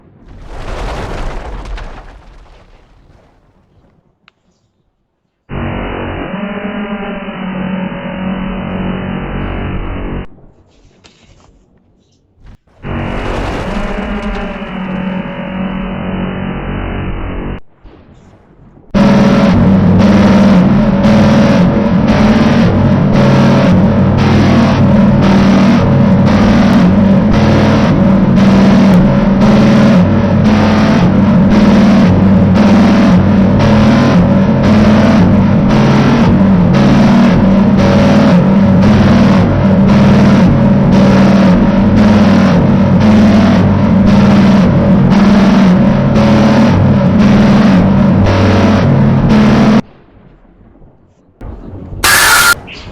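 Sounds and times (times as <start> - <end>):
explosion blast: 0.0 - 4.0, 12.4 - 16.1
engine-like drone: 5.5 - 10.4, 12.5 - 17.7, 18.9 - 50.8, 51.4 - 52.9.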